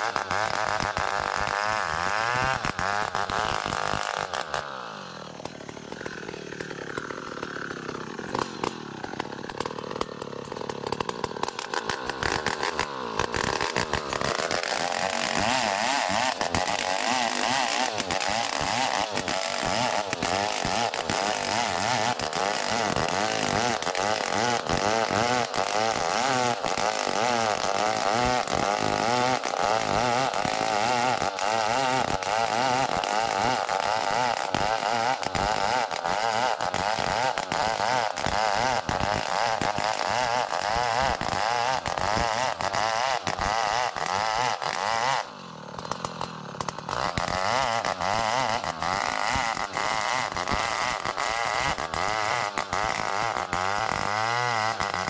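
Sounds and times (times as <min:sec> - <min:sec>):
chainsaw cutting wood: 0:00.0 - 0:55.0.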